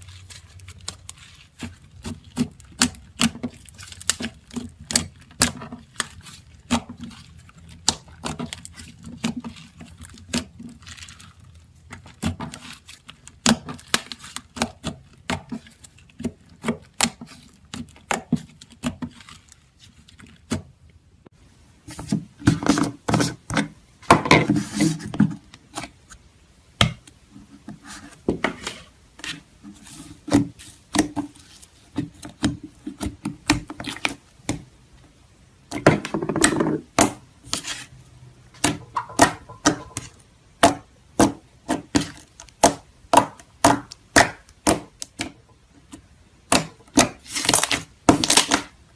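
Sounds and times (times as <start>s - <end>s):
slime clicking and popping: 38.6s - 45.4s.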